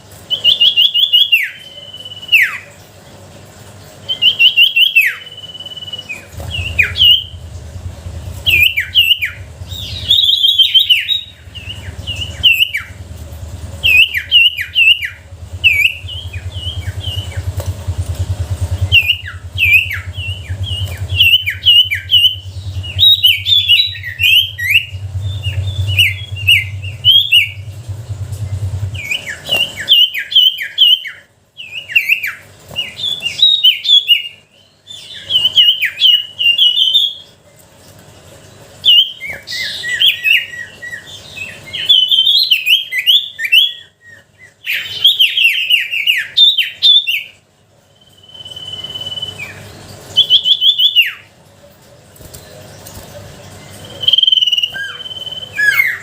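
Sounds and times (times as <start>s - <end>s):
low hum: 5.3s - 30.6s
bird singing sharp chirps: 18.4s - 27.8s.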